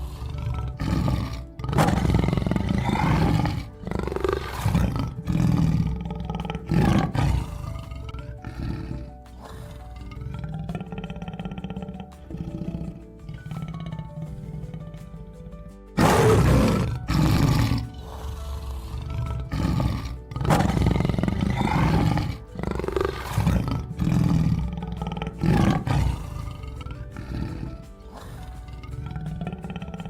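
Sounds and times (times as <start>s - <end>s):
animal roaring: 0.0s - 15.3s, 16.0s - 30.0s
background music: 0.0s - 30.0s.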